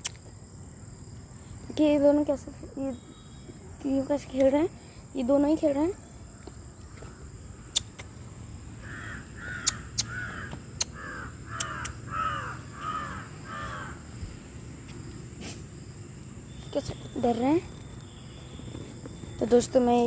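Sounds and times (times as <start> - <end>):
sharp clicks: 7.7 - 8.1, 9.6 - 10.2
animal calling: 8.8 - 14.0.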